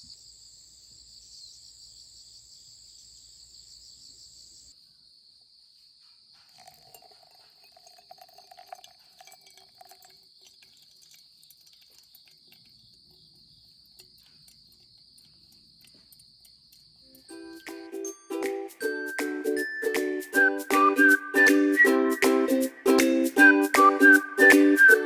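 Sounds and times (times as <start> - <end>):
crickets chirring: 0.0 - 18.9.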